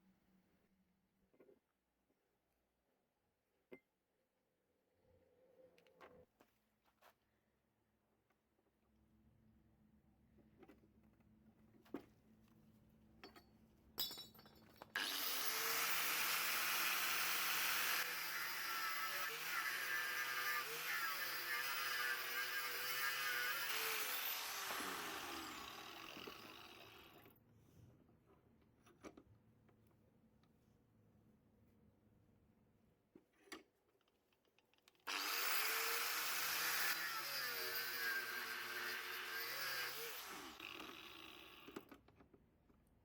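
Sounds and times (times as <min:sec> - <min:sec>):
electric grinder running: 0:15.0 - 0:27.1, 0:35.1 - 0:41.0.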